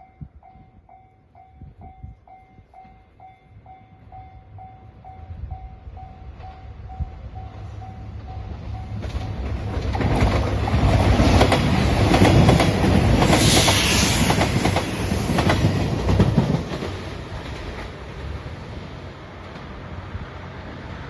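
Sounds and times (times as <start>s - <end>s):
diesel train passing: 0.0s - 21.0s
wheels clicking over rail joints: 8.2s - 13.4s.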